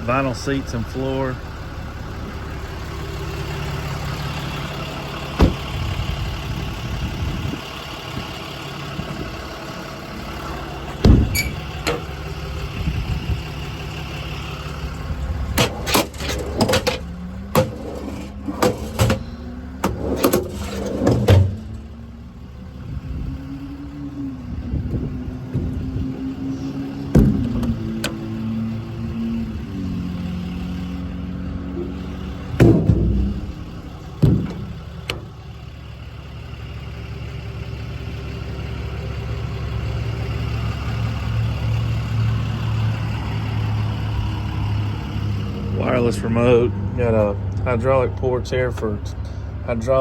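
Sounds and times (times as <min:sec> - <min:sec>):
diesel engine idling: 0:00.0 - 0:50.0
sharp knocks: 0:32.5 - 0:35.2
clatters and bangs: 0:32.5 - 0:35.3.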